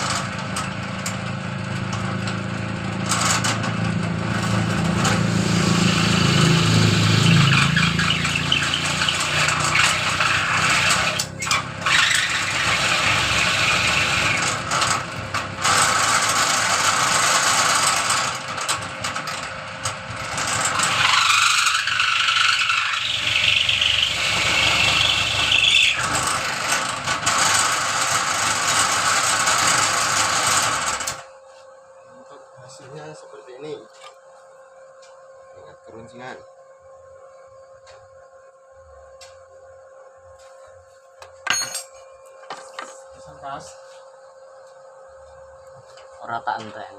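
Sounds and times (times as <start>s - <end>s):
machine cutter shaving wooden dowel: 0.0s - 31.3s.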